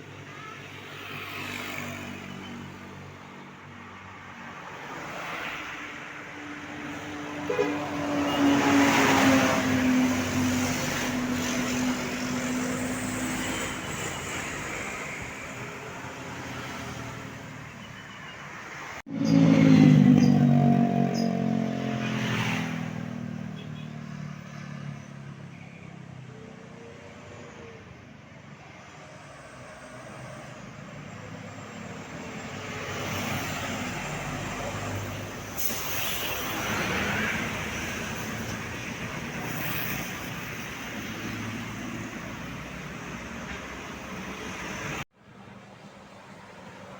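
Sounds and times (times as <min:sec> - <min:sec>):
buses driving past: 0:00.0 - 0:23.6, 0:24.3 - 0:46.9
road noise: 0:00.0 - 0:46.9.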